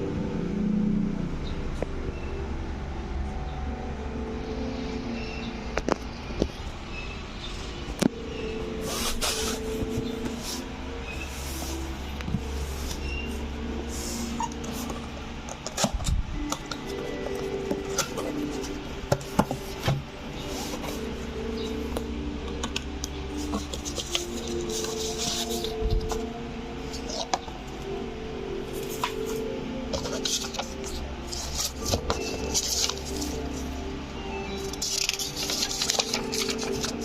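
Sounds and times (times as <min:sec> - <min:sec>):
soft background music: 0:00.0 - 0:37.0.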